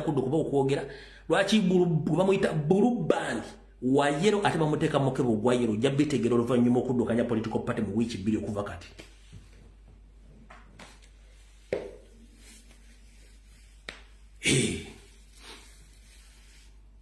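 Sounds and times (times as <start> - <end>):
loud breath into microphone: 0.9 - 1.3.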